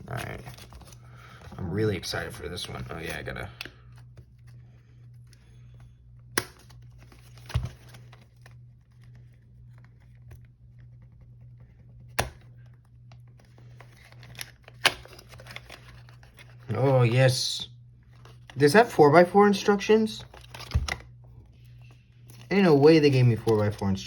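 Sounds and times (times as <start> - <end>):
steady low hum: 0.0 - 24.0
packaging rustling and crinkling: 13.2 - 16.7, 20.2 - 24.0.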